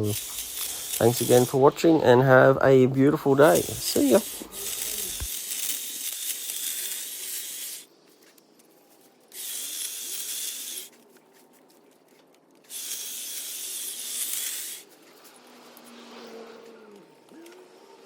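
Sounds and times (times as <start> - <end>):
hedge trimmer running: 0.0 - 1.8, 3.2 - 7.8, 12.7 - 14.9.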